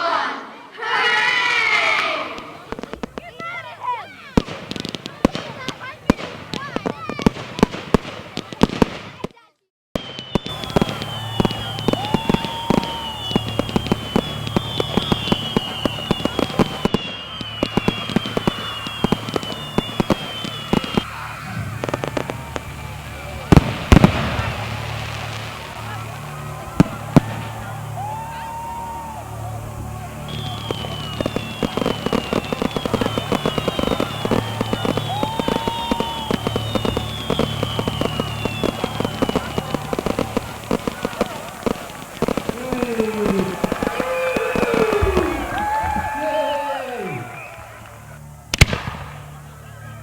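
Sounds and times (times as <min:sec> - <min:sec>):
firework whistles: 0:01.2 - 0:09.2, 0:10.0 - 0:50.0
fireworks cracking and popping: 0:01.6 - 0:50.0.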